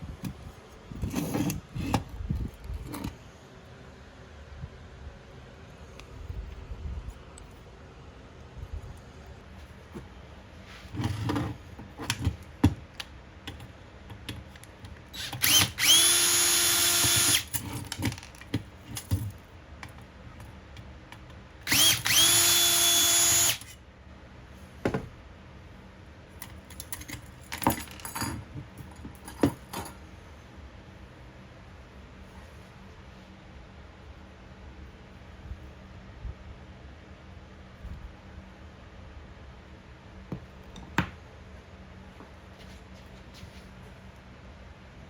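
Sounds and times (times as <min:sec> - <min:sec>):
parts and tools clicking: 0:13.0 - 0:20.0
power drill whining: 0:15.2 - 0:17.5, 0:21.7 - 0:23.8.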